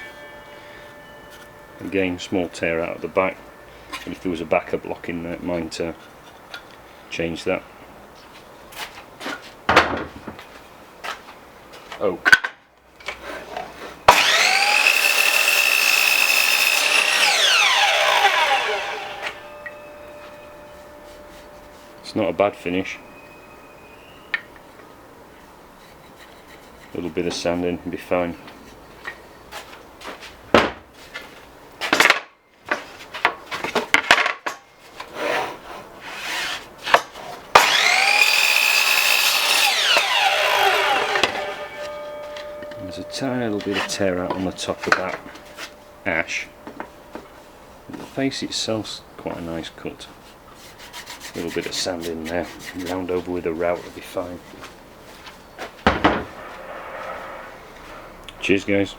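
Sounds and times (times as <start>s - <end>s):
mitre saw motor whining: 14.1s - 21.0s, 37.6s - 46.6s
saw blade cutting wood: 14.1s - 21.0s, 35.0s - 46.5s.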